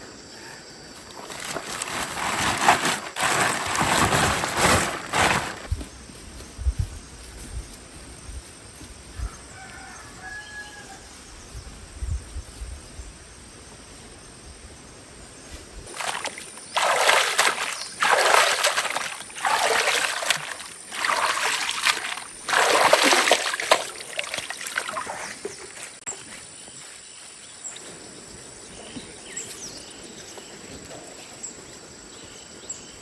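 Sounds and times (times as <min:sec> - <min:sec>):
water splashing and sloshing: 0:01.0 - 0:05.8, 0:15.8 - 0:26.2.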